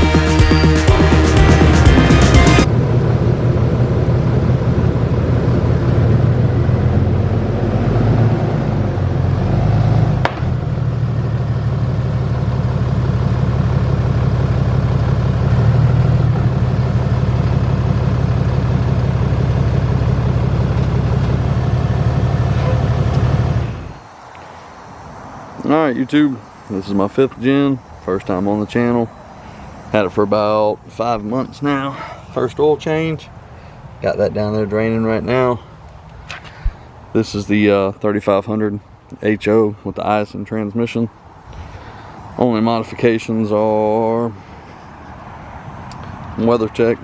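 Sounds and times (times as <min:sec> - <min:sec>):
pickup truck engine running: 0:00.0 - 0:24.2.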